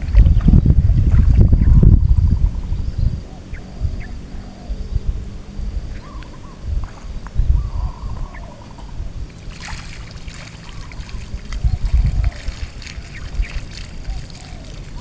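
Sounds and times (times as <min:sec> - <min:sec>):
crackly water splashing: 0:00.0 - 0:01.8, 0:06.0 - 0:15.0
low thumps of wind: 0:00.0 - 0:15.0
water trickling in a stream: 0:00.0 - 0:15.0.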